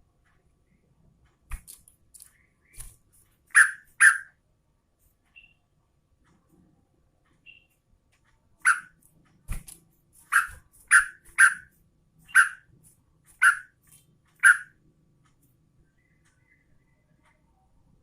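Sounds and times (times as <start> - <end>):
bird sharp call notes: 10.3 - 11.7, 14.4 - 14.7.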